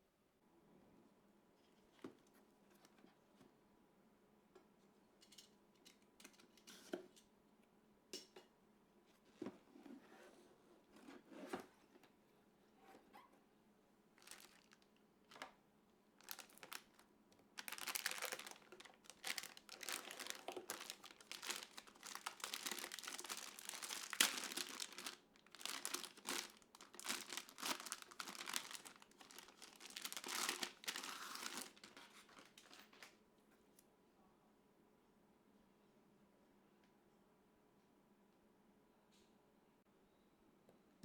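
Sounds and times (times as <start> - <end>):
packaging crinkling and rustling: 14.2 - 15.6, 16.2 - 33.2.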